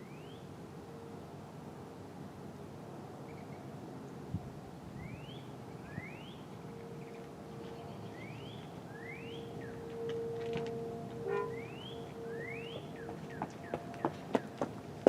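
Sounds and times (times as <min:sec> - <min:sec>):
distant warning siren: 0:00.0 - 0:03.2, 0:04.8 - 0:15.0
bird whistling: 0:11.3 - 0:14.2.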